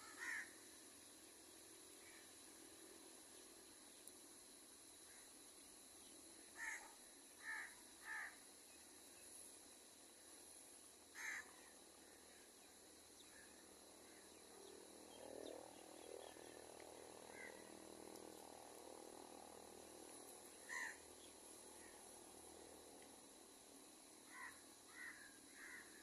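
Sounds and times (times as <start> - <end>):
crows cawing: 0.0 - 0.5, 6.6 - 8.4, 11.2 - 11.5, 17.3 - 17.6, 20.6 - 21.0, 24.3 - 26.0.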